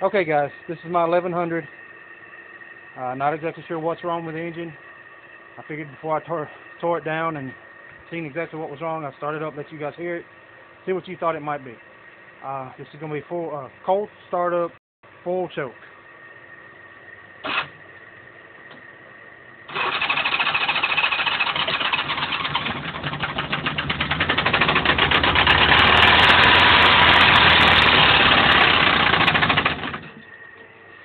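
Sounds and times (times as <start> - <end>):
motorcycle engine knocking: 22.1 - 25.6.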